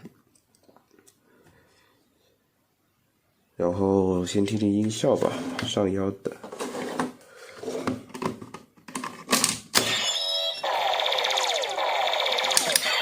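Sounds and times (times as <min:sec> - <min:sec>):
toy belt electronic sound effect: 0:09.8 - 0:13.0.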